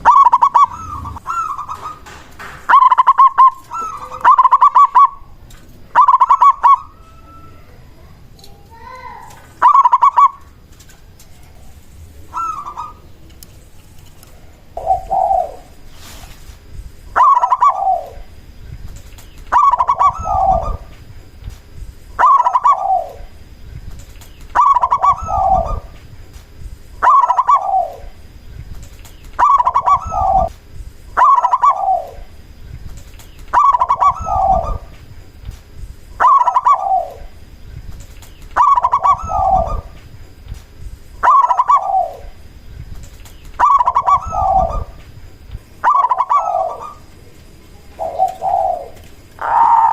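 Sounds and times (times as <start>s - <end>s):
dove cooing: 0.0s - 7.8s, 9.6s - 10.6s, 12.2s - 13.2s, 14.3s - 16.2s, 17.1s - 18.5s, 19.5s - 21.0s, 22.1s - 23.4s, 24.5s - 26.1s, 27.0s - 28.3s, 29.4s - 32.4s, 33.4s - 35.1s, 36.2s - 37.4s, 38.5s - 40.0s, 41.2s - 42.5s, 43.6s - 49.9s.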